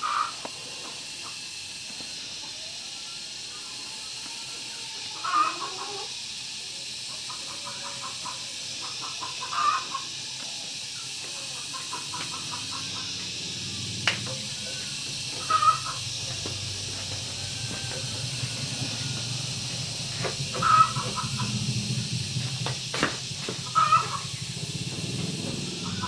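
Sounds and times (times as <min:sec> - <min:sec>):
steady hiss: 0:00.0 - 0:26.0
chickens clucking: 0:05.2 - 0:06.2, 0:07.1 - 0:10.2, 0:11.0 - 0:24.6, 0:25.7 - 0:26.0.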